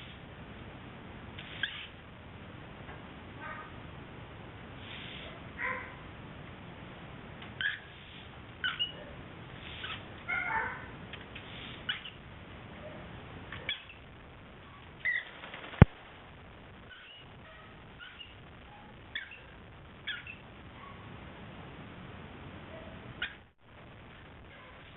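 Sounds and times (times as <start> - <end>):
cockatiel chirping and squawking: 1.4 - 2.0, 7.6 - 9.0, 9.6 - 10.7, 11.4 - 12.2, 13.5 - 14.0, 14.6 - 15.3, 16.9 - 18.4, 19.1 - 20.4, 23.2 - 23.4.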